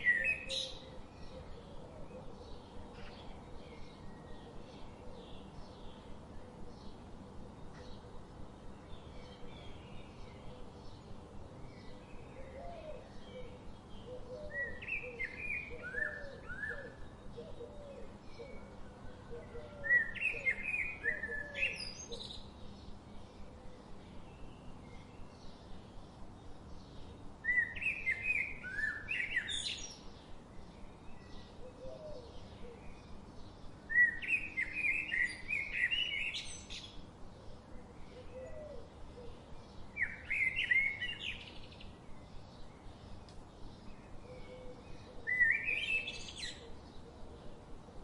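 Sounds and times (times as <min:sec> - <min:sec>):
faint bird chirps: 0:30.9 - 0:47.6.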